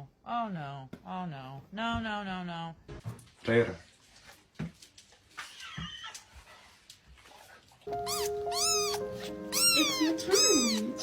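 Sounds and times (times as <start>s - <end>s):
background music with held notes: 7.9s - 11.0s
cat meowing: 8.0s - 11.0s.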